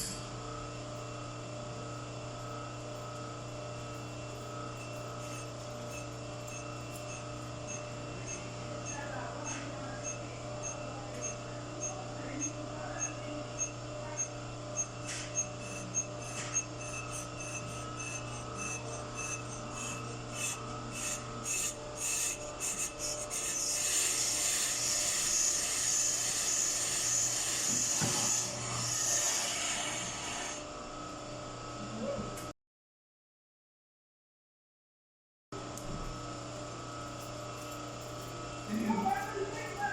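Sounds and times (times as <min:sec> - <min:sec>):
steady machine hum: 0:00.0 - 0:32.5, 0:35.6 - 0:39.9.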